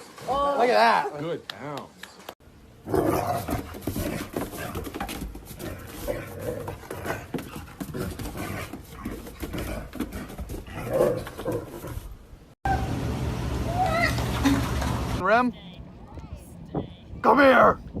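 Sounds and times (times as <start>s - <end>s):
scuffling and clattering: 3.3s - 12.2s.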